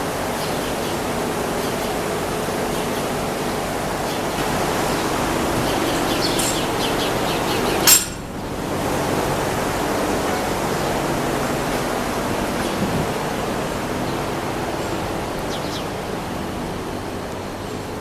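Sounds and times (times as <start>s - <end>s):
sharp clink: 7.9s - 8.3s.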